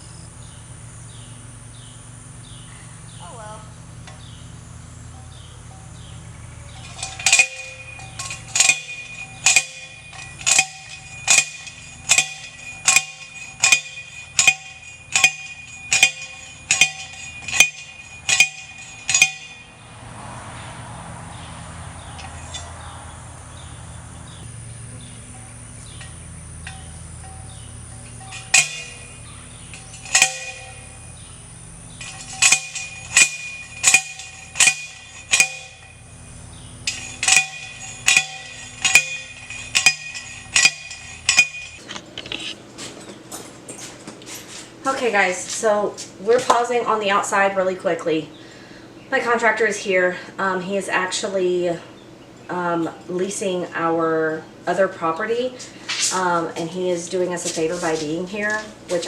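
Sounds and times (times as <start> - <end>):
metal-on-metal blows ringing: 6.7 - 20.0, 21.3 - 41.8.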